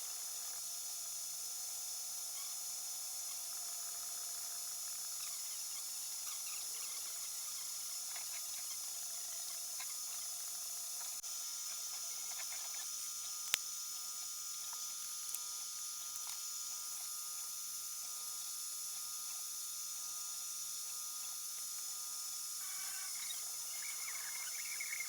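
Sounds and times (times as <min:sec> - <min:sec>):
high-pitched electronic whine: 0:22.2 - 0:25.0
stepper motors chirping: 0:22.6 - 0:25.0.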